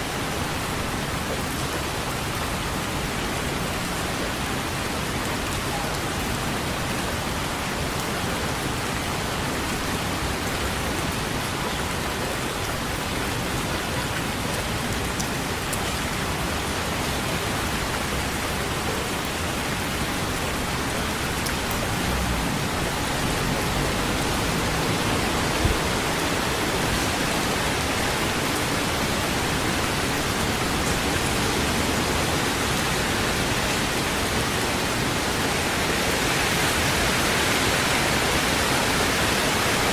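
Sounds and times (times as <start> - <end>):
steady rain: 0.0 - 39.9
sharp tap: 25.6 - 26.0.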